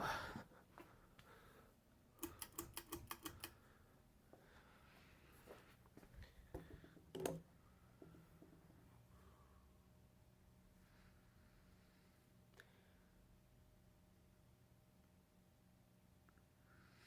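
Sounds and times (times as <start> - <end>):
faint low hum: 0.0 - 17.0
light typing-like clicks: 2.2 - 3.6.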